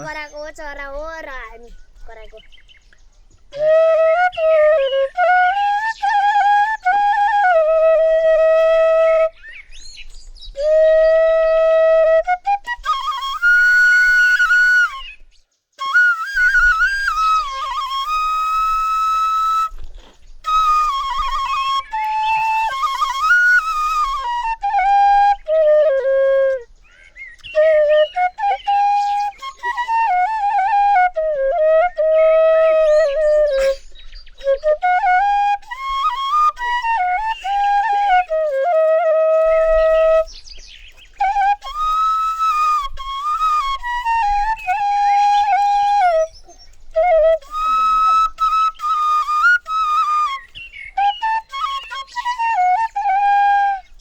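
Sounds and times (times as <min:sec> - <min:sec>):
bamboo flute melody: 0:00.0 - 0:02.6, 0:03.3 - 0:54.0.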